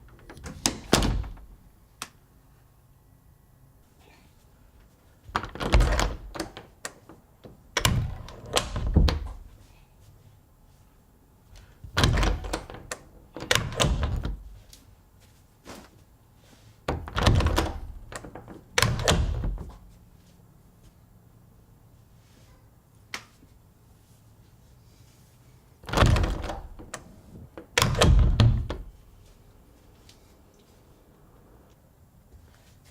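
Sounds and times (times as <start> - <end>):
door opening and shutting: 0.0 - 1.6, 5.3 - 9.5, 11.8 - 14.6, 16.9 - 19.8, 25.8 - 29.0
door closing thud: 0.4 - 1.5, 5.4 - 6.6, 7.8 - 9.5, 11.9 - 14.5, 16.9 - 19.8, 25.9 - 27.0, 27.8 - 28.9
door latch clicks: 12.0 - 14.4, 17.0 - 19.7.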